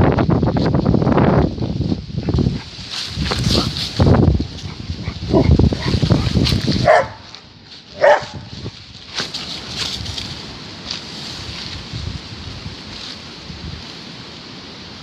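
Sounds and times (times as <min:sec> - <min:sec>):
low rumbling noise: 0:00.0 - 0:15.0
dogs yelping barks: 0:04.6 - 0:08.5.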